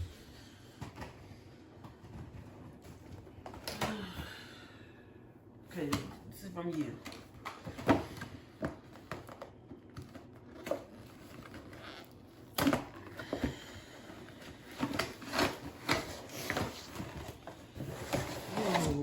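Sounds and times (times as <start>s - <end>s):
packaging rustling and crinkling: 8.7s - 19.0s.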